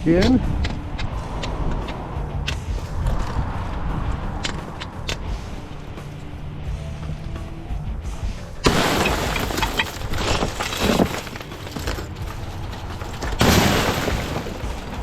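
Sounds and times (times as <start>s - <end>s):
glass crash: 8.6s - 15.0s
glass door shattering: 8.6s - 15.0s
glass pieces tinkling: 8.8s - 15.0s.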